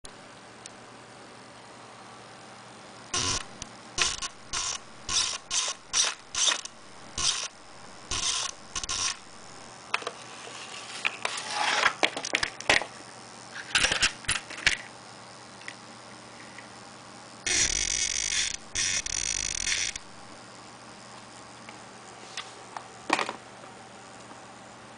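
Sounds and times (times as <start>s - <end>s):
servo gear whir: 3.2s - 9.6s.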